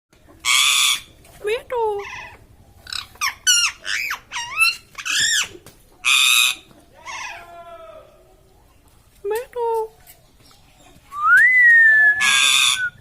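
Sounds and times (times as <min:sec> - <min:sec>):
parrot harsh squawk: 0:00.4 - 0:01.1, 0:02.0 - 0:07.5, 0:12.1 - 0:13.0
parrot whistled calls: 0:11.3 - 0:13.0.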